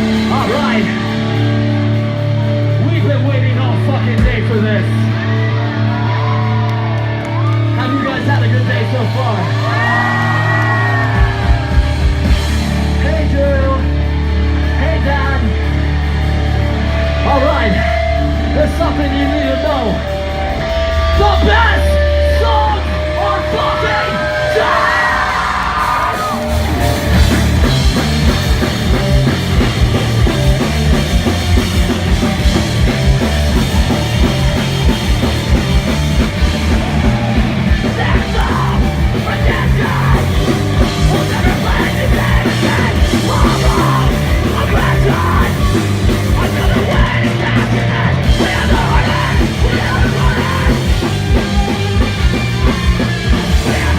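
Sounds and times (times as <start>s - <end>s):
fast driving drums: 0.0s - 53.9s
live rock band playing: 0.0s - 53.9s
person yelling vocals: 37.1s - 50.9s.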